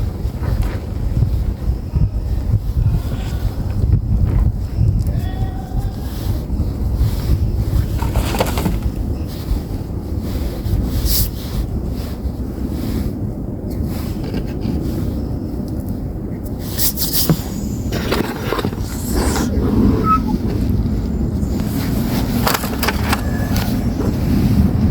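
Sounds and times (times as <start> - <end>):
low handling rumble: 16.5 - 24.9.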